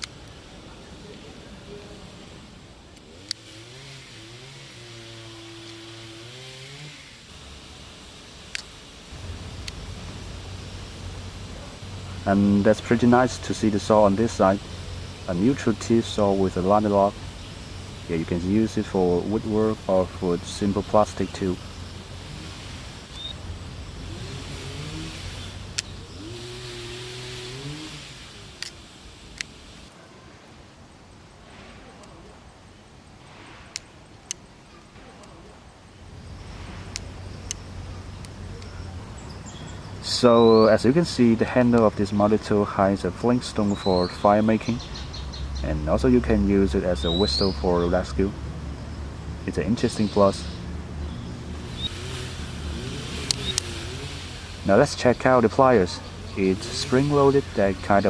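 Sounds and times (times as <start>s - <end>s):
sharp metal clicks: 0.0s - 0.4s, 5.3s - 6.1s, 8.2s - 10.7s, 24.3s - 26.7s, 27.6s - 29.9s, 51.6s - 55.2s
passing vehicle engine hum: 0.0s - 29.9s, 36.1s - 58.0s.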